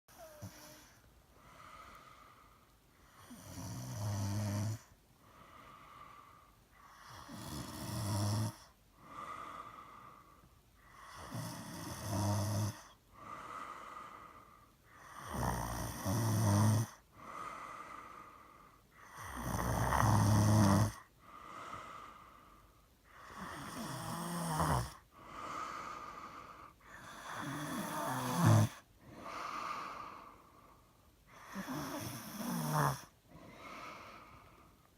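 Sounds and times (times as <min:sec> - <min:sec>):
soft breathing: 0:00.1 - 0:03.4, 0:04.8 - 0:07.3, 0:08.7 - 0:11.2, 0:12.8 - 0:15.2, 0:17.0 - 0:19.1, 0:21.0 - 0:23.6, 0:25.0 - 0:32.1, 0:33.0 - 0:34.9
person snoring heavily: 0:03.2 - 0:06.2, 0:06.9 - 0:10.2, 0:10.9 - 0:22.3, 0:23.1 - 0:30.4, 0:31.3 - 0:34.6.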